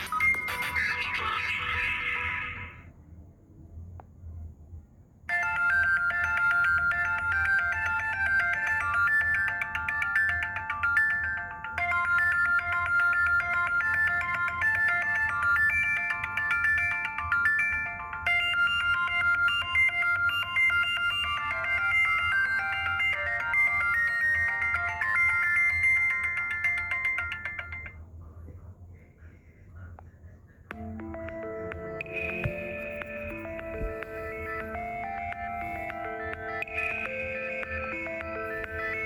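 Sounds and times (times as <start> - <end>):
ringtone melody of high notes: 0.0 - 2.5, 5.3 - 28.0, 30.7 - 39.0.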